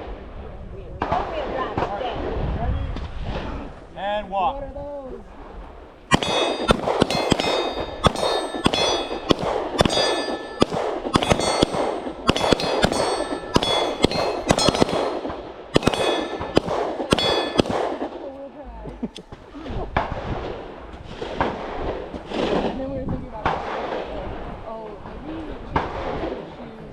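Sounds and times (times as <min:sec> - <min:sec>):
metallic ringing of targets: 0:06.1 - 0:18.0
pistol shots: 0:06.1 - 0:18.4, 0:23.5 - 0:24.2.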